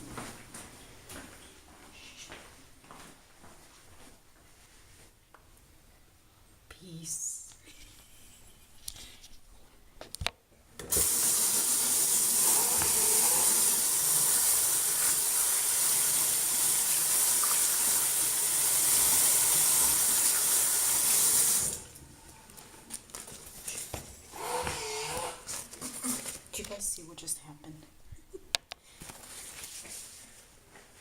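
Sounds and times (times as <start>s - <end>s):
water running from a tap into a sink: 11.0s - 22.0s.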